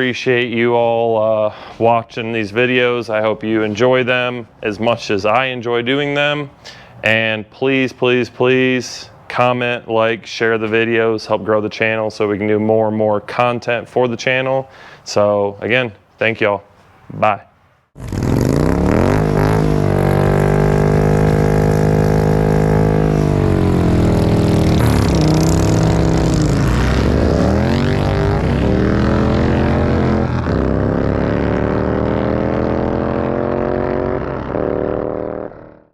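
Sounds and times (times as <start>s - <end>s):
engine revving: 18.0s - 35.9s.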